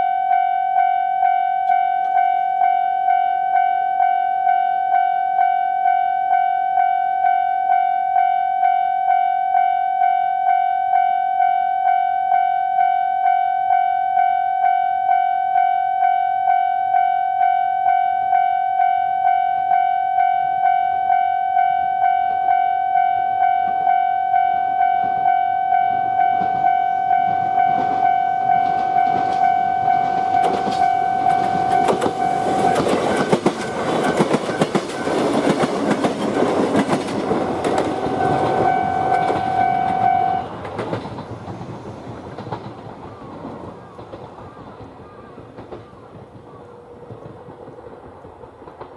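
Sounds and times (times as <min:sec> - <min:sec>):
level crossing warning bell: 0:00.0 - 0:41.0
train wheels clattering: 0:25.9 - 0:48.9.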